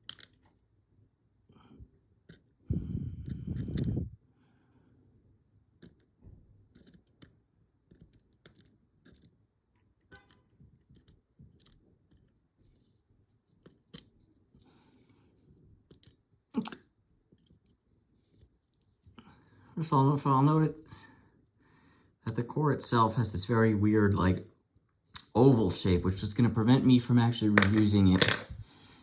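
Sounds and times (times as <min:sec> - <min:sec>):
padlock parts clicking and scraping: 0:02.2 - 0:02.6, 0:03.2 - 0:04.0, 0:06.7 - 0:09.4, 0:10.0 - 0:12.4, 0:15.9 - 0:19.0.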